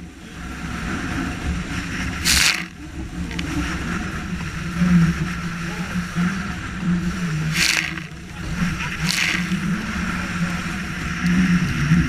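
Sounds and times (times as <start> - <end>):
motorboat engine: 0.0 - 12.0
waves slapping against hull: 0.0 - 12.0.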